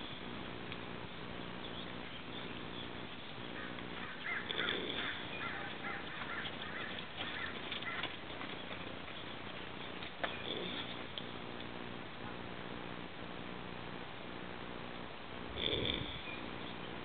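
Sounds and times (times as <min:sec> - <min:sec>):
birds chirping: 0:00.0 - 0:12.8, 0:15.6 - 0:17.0
horse snoring: 0:04.3 - 0:06.0, 0:10.3 - 0:11.2, 0:15.5 - 0:16.5.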